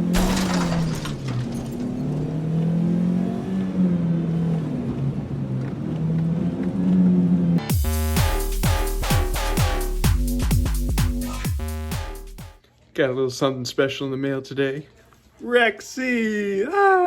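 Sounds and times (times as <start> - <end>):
car engine revving: 0.0 - 10.1.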